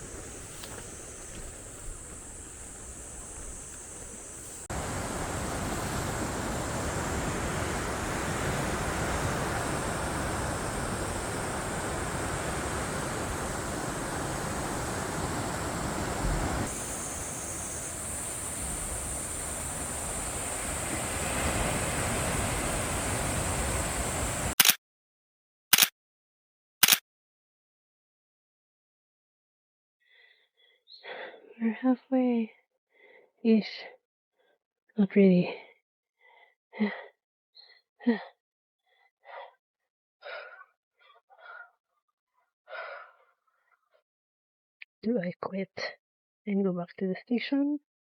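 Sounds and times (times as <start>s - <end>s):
rushing outdoor noise: 0.0s - 24.6s
thin high buzz: 0.0s - 24.6s.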